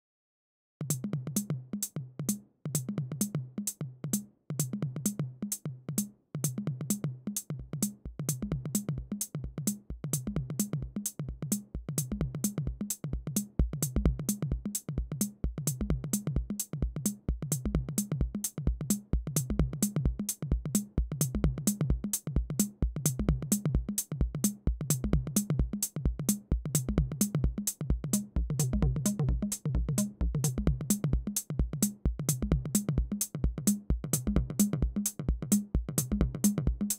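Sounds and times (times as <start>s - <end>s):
deep kick drum: 7.6s - 36.9s.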